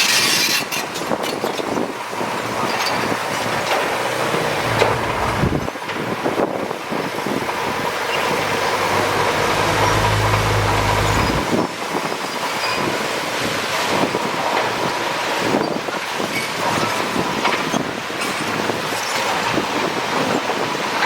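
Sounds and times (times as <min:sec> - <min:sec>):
heavy diesel machinery drone: 0:02.2 - 0:11.8.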